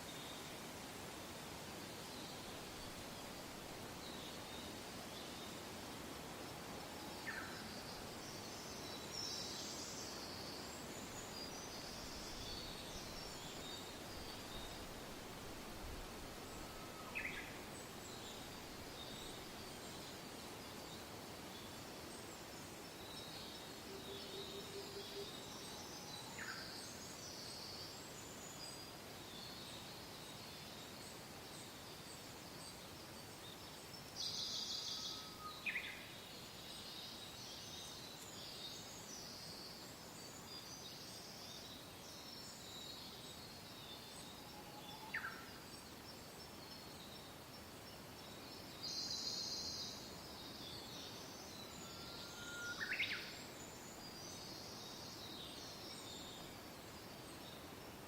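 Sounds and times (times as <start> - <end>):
soft wind: 0.0 - 58.0.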